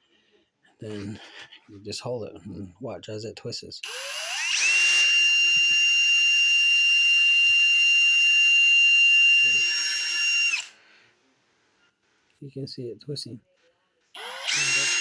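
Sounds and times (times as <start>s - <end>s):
electric drill whining: 3.8s - 10.8s, 14.2s - 15.0s.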